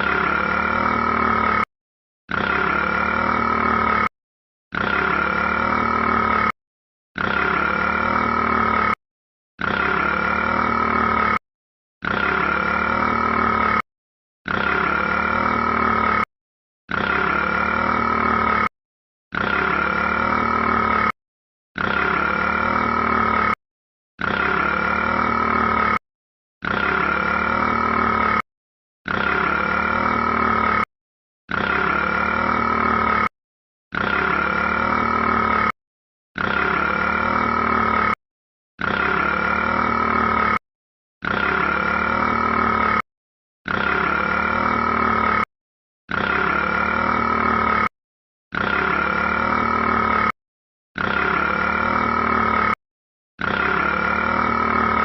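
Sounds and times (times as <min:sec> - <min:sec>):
rat burping: 0:00.0 - 0:01.7, 0:02.3 - 0:04.1, 0:04.7 - 0:06.6, 0:07.2 - 0:09.0, 0:09.6 - 0:11.4, 0:12.0 - 0:13.8, 0:14.4 - 0:16.3, 0:16.9 - 0:18.7, 0:19.3 - 0:21.2, 0:21.8 - 0:23.6, 0:24.2 - 0:26.0, 0:26.6 - 0:28.4, 0:29.0 - 0:30.9, 0:31.5 - 0:35.8, 0:36.4 - 0:38.2, 0:38.8 - 0:40.6, 0:41.2 - 0:43.0, 0:43.7 - 0:45.5, 0:46.1 - 0:50.4, 0:51.0 - 0:52.8, 0:53.4 - 0:55.0.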